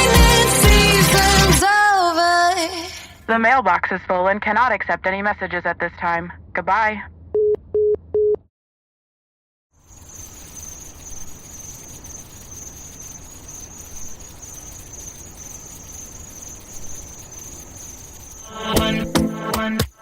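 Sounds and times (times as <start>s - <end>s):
soft hiss: 9.8s - 19.5s
insects chirring: 9.8s - 20.0s.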